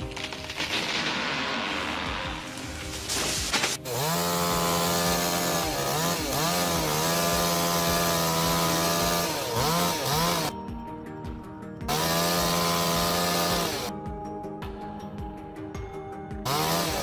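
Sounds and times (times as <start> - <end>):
chainsaw engine at high revs: 3.8 - 10.5, 11.9 - 13.9, 16.4 - 17.0.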